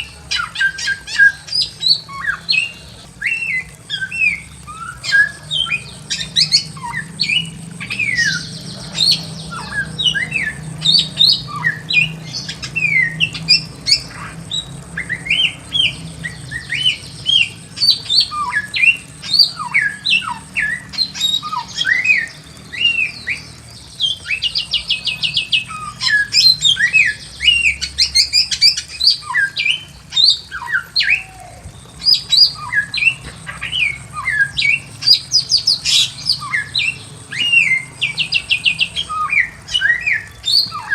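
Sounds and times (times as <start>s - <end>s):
bird whistling and chattering: 0.0s - 40.9s.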